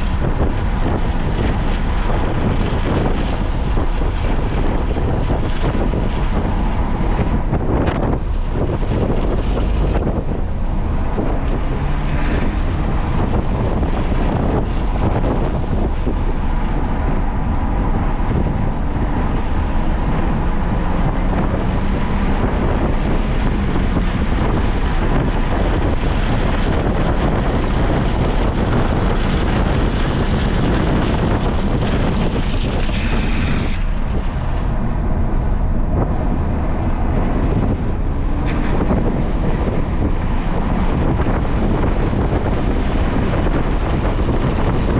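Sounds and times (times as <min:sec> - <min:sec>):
race car engine under load: 0:00.0 - 0:44.9
wind buffeting microphone: 0:00.0 - 0:44.9.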